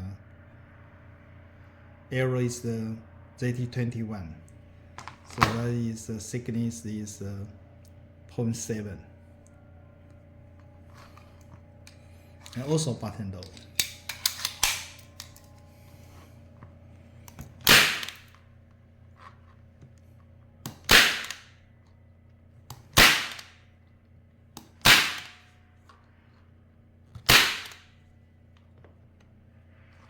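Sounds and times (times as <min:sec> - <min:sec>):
staple gun firing: 0:17.6 - 0:18.2, 0:20.7 - 0:21.5, 0:23.0 - 0:23.5, 0:24.6 - 0:25.4, 0:27.2 - 0:27.8.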